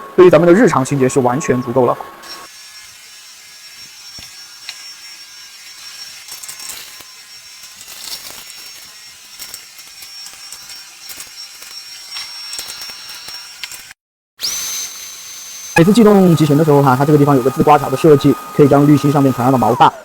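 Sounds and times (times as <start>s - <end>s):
stick vacuum whining: 14.4s - 20.0s.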